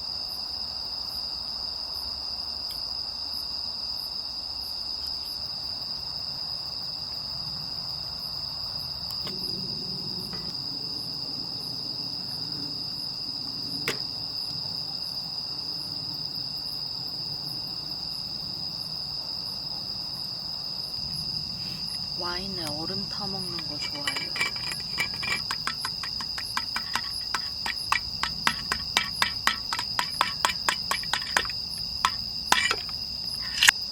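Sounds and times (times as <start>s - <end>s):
crickets trilling: 0.0s - 33.9s
sharp click: 23.9s - 33.8s.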